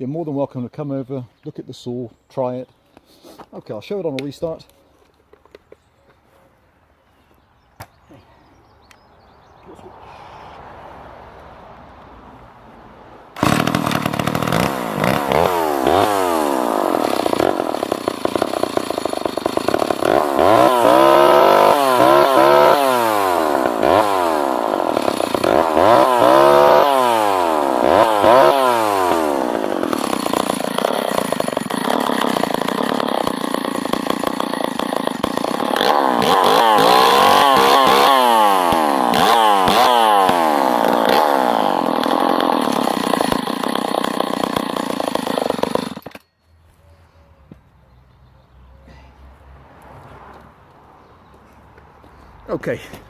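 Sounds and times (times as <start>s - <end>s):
chainsaw revving: 13.4s - 46.2s.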